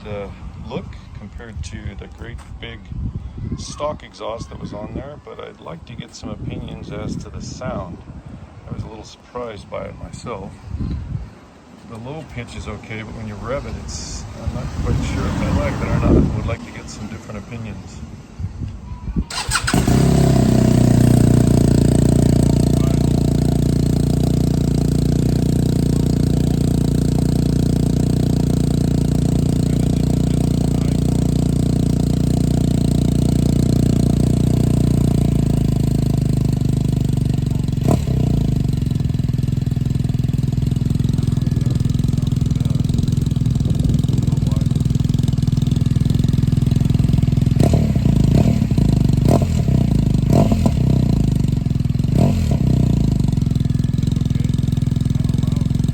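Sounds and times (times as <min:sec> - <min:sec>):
motorcycle engine idling: 0:19.3 - 0:55.9.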